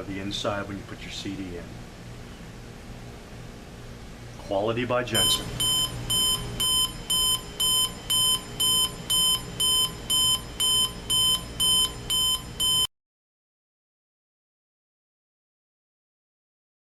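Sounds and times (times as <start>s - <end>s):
clock radio alarm beeping: 5.2s - 12.9s.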